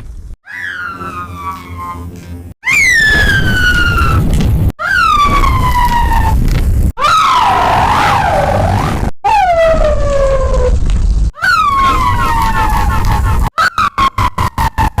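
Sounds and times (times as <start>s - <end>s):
siren rising and falling: 0.4s - 2.1s.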